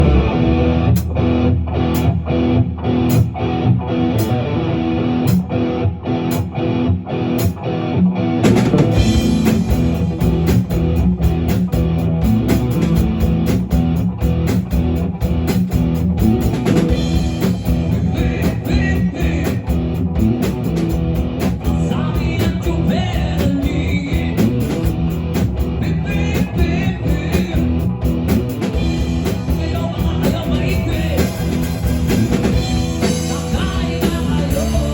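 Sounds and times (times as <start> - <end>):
rock music: 0.0 - 34.9.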